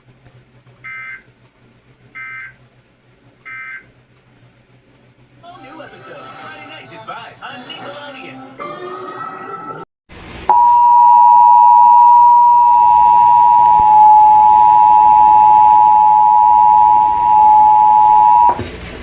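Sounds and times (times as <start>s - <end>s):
emergency alert two-tone signal: 10.5s - 18.6s.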